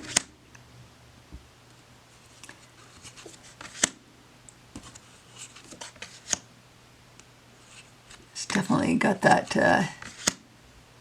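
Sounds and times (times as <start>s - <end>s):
cards being flipped: 2.4s - 4.0s, 4.8s - 6.4s, 10.0s - 10.4s.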